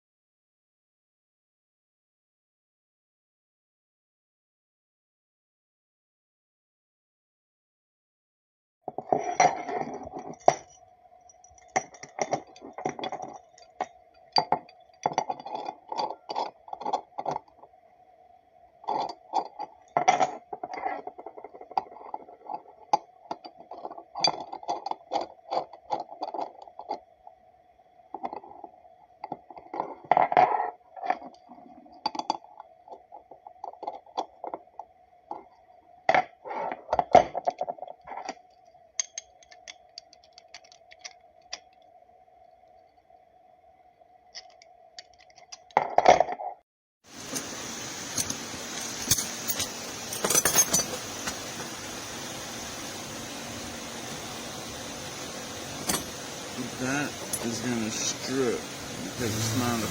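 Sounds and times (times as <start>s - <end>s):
faint steady hum: 8.9s - 45.9s, 47.1s - 59.9s
wrench clinking on bolt: 48.1s - 51.4s, 55.8s - 56.2s.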